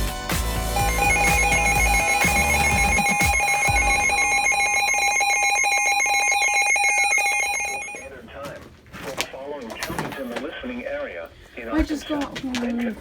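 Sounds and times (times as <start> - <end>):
music: 0.0 - 4.4
steady lower tone: 0.7 - 8.1
warbling emergency alert tone: 0.7 - 8.1.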